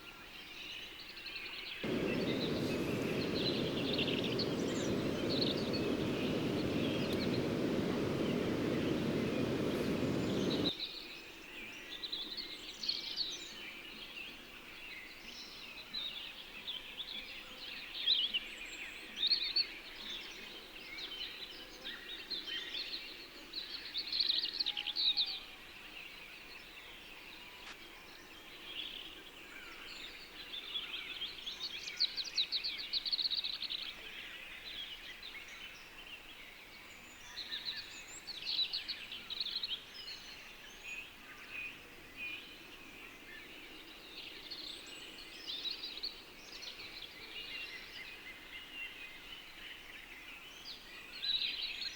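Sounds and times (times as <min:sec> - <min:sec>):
birds chirping and trilling: 0:01.8 - 0:10.7
low rushing noise: 0:01.8 - 0:10.7.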